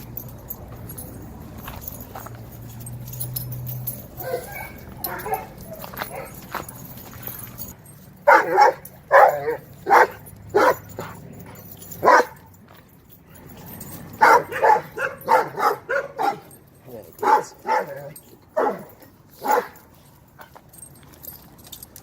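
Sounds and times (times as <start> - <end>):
dog barking: 4.2 - 6.4, 8.3 - 11.2, 12.0 - 12.5, 14.2 - 16.5, 17.2 - 19.8.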